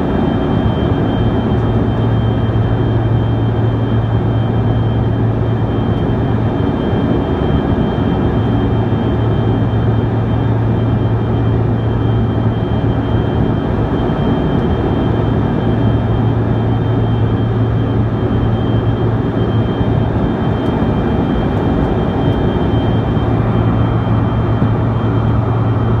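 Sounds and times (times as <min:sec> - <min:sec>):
airliner cabin engine noise: 0:00.0 - 0:26.0
high whining tones: 0:07.2 - 0:26.0.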